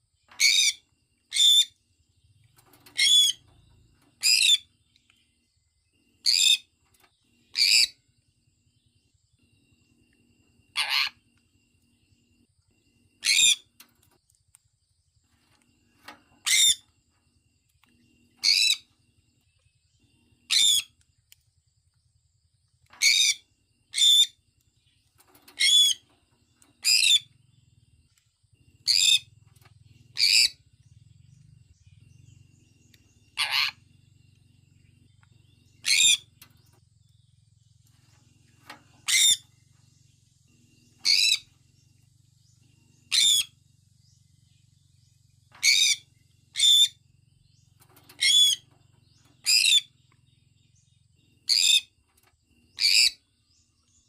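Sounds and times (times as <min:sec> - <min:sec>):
parrot high-pitched calls: 0:00.4 - 0:01.7, 0:03.0 - 0:03.4, 0:07.5 - 0:08.0, 0:10.7 - 0:11.2, 0:13.2 - 0:13.6, 0:16.4 - 0:16.8, 0:18.4 - 0:18.8, 0:20.5 - 0:20.9, 0:25.6 - 0:26.0, 0:28.8 - 0:29.3, 0:30.2 - 0:30.6, 0:33.4 - 0:33.8, 0:35.8 - 0:36.3, 0:39.0 - 0:39.4, 0:41.0 - 0:41.4, 0:43.1 - 0:43.6, 0:45.6 - 0:47.0, 0:48.2 - 0:48.6, 0:49.4 - 0:49.9, 0:51.5 - 0:51.9, 0:52.8 - 0:53.2.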